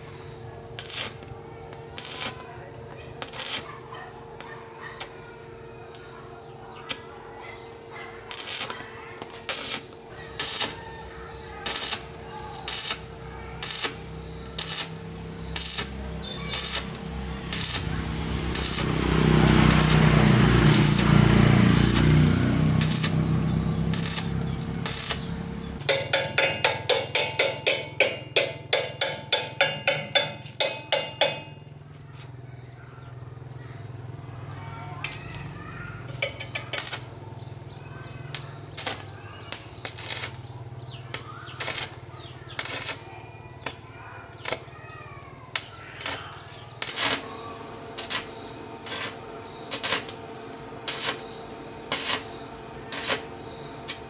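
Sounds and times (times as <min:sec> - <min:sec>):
metal knocks: 0:25.8 - 0:31.6
ringing metallic strikes: 0:25.8 - 0:31.7.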